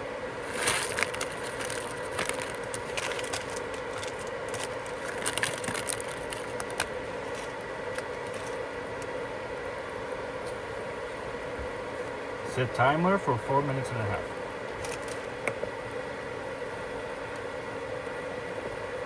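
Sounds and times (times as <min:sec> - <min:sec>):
steady hiss: 0:00.0 - 0:19.0
packaging rustling: 0:00.4 - 0:08.6, 0:14.8 - 0:15.3
utensils clicking and scraping: 0:00.5 - 0:08.6.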